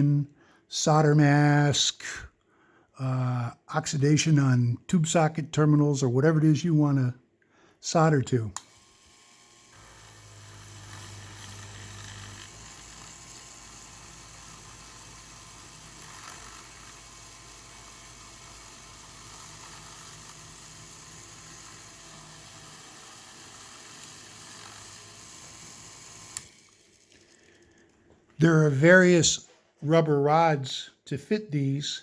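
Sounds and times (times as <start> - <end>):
electric eraser motor humming: 8.6 - 26.7.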